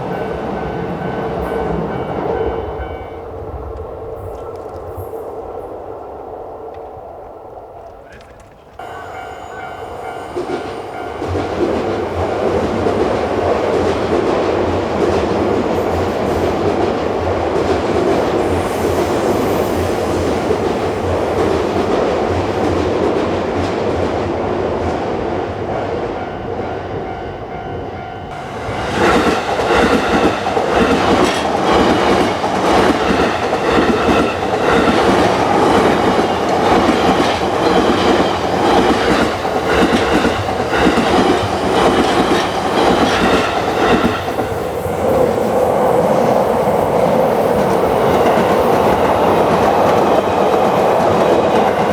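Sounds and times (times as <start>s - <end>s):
train wheels clattering over rail joints: 28.8s - 45.0s.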